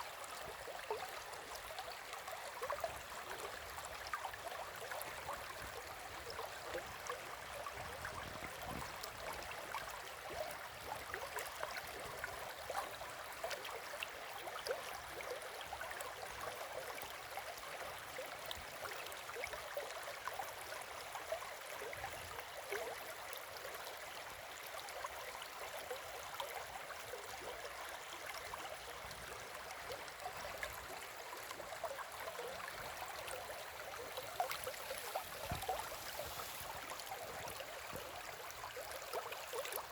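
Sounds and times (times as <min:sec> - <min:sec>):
river flowing over stones: 0:26.8 - 0:39.9.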